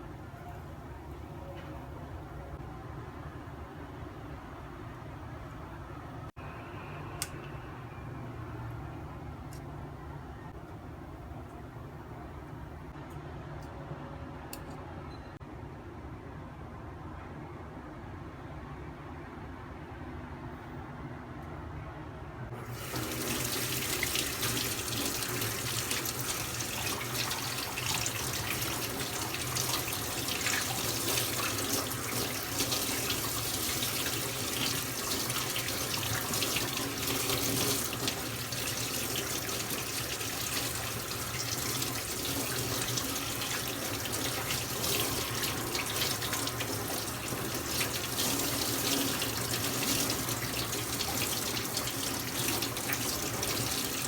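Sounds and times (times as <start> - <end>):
tap water running into sink: 22.6 - 54.0.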